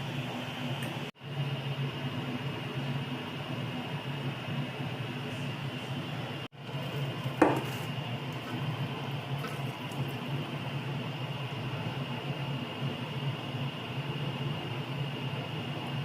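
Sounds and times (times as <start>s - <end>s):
kitchen appliance humming: 0.0s - 16.0s
kitchenware clattering: 7.4s - 8.5s.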